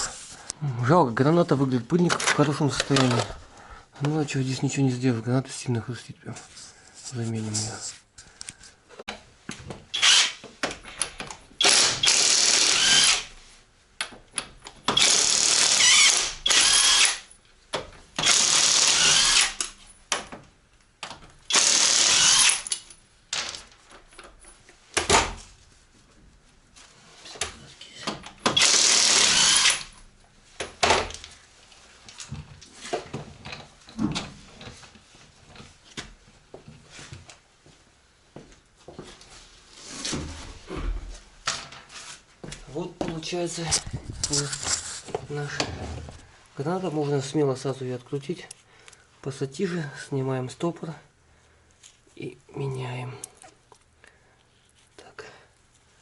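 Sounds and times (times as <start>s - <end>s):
power tool spinning bolts: 10.0s - 10.4s, 11.6s - 13.3s, 14.9s - 17.3s, 18.2s - 19.7s, 21.5s - 22.8s, 28.5s - 29.9s.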